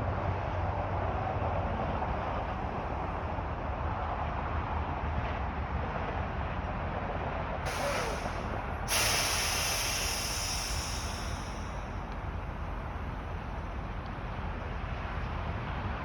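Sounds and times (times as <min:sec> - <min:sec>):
truck air brakes hissing: 0:07.7 - 0:12.1
idling engines rumbling: 0:07.7 - 0:16.0.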